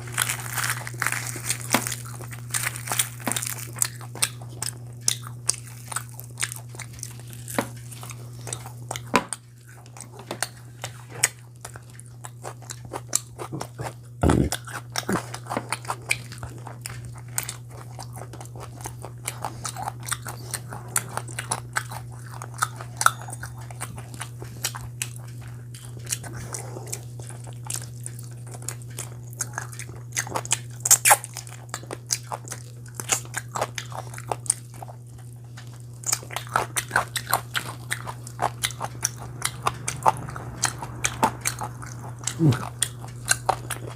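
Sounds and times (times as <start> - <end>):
person chewing and crunching food: 0.0 - 43.9
steady low hum: 0.0 - 43.9
mouth smacks: 13.5 - 15.3, 42.2 - 42.9.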